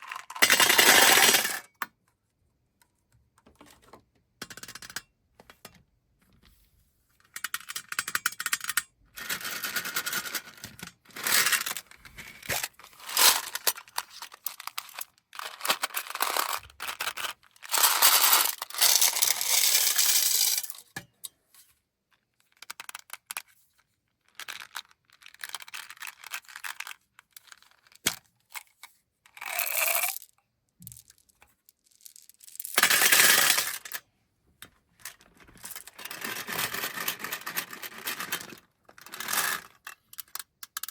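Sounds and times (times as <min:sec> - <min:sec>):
small clicks and rattles: 0:22.1 - 0:34.0, 0:34.6 - 0:40.9
candies pouring and scattering: 0:29.4 - 0:30.2.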